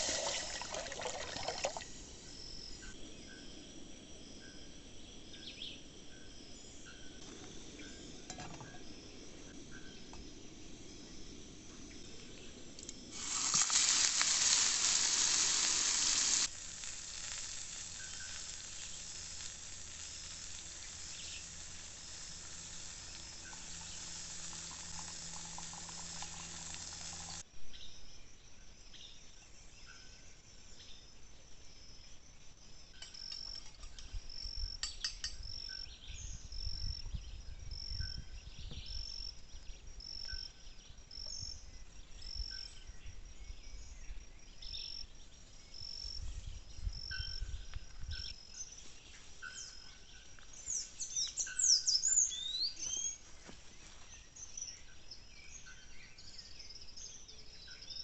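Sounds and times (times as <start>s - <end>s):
food sizzling in a hot pan: 0.0s - 2.4s, 13.0s - 27.4s
crickets calling: 0.0s - 58.0s.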